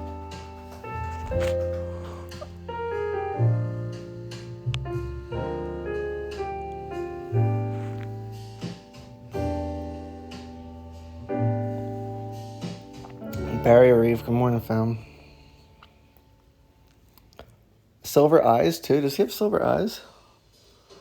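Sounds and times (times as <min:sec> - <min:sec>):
deep bass notes: 0:00.0 - 0:15.8
jazz piano chords: 0:00.0 - 0:17.1.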